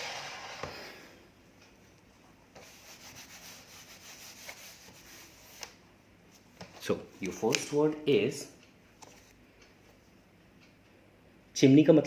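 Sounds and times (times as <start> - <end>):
scratchy rubbing sweep: 0.0 - 0.7, 2.6 - 5.7.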